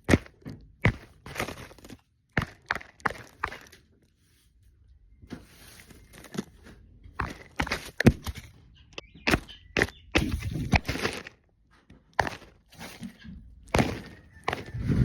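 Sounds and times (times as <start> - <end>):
footsteps on hard surface: 0.0 - 3.8, 12.2 - 15.0
scuffing: 12.2 - 14.8.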